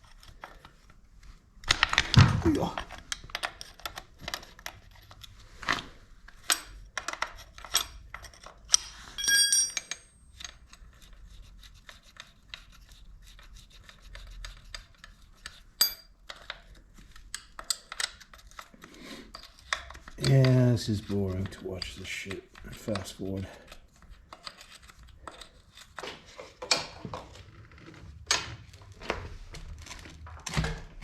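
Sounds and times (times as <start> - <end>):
metal clicks and scraping: 2.8 - 10.9, 13.4 - 27.4
ringing metal clink: 9.2 - 10.2, 15.8 - 16.1.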